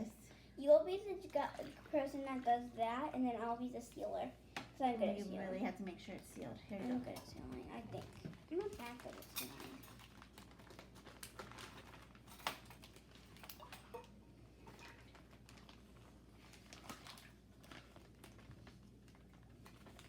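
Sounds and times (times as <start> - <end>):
plastic bag crinkling: 6.0 - 20.0.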